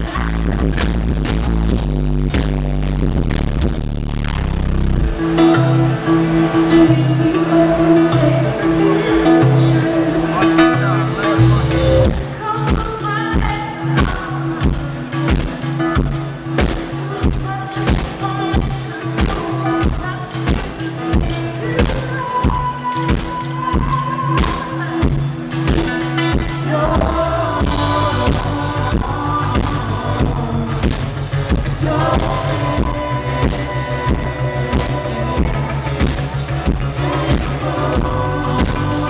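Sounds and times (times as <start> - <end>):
woman singing: 0.0 - 0.8, 5.4 - 11.3, 12.0 - 39.0
live band music: 0.0 - 39.0
steady drum beat: 10.6 - 39.0.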